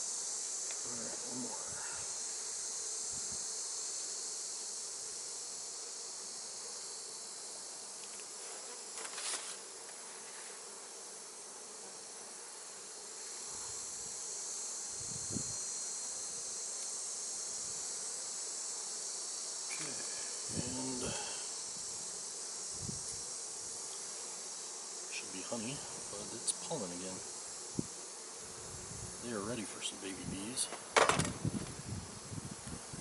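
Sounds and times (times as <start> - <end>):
honeybees buzzing: 0.0 - 33.0
knock: 31.0 - 31.4.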